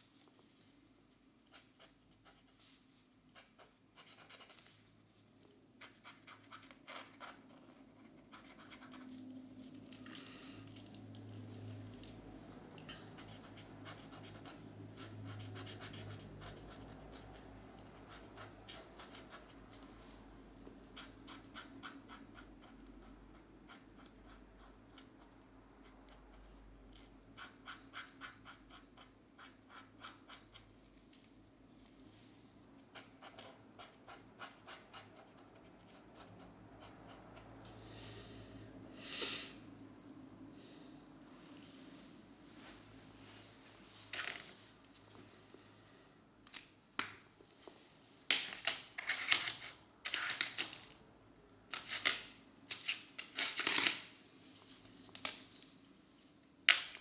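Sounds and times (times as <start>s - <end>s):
markers scratching on paper: 5.8s - 10.0s, 13.0s - 19.8s.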